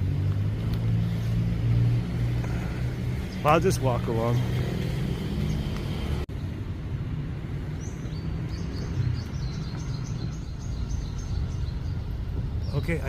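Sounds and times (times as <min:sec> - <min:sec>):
small bird chirping: 0:07.7 - 0:13.0.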